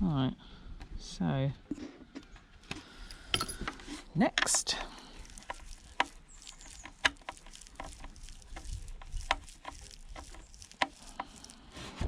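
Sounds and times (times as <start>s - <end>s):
plastic parts and tools clicking: 2.2s - 11.8s.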